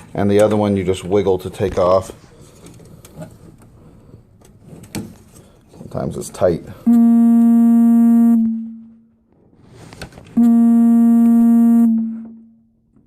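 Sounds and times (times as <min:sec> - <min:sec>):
electronic buzzer tone: 0:06.9 - 0:08.9, 0:10.4 - 0:12.6.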